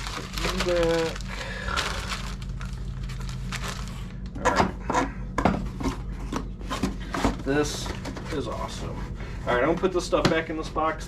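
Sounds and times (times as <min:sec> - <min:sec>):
packaging rustling and rubbing: 0:00.0 - 0:04.2
steady low hum: 0:00.0 - 0:11.0.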